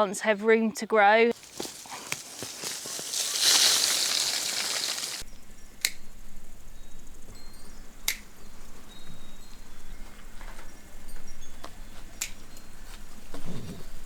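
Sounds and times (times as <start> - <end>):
dry leaves rustling: 1.3 - 5.2.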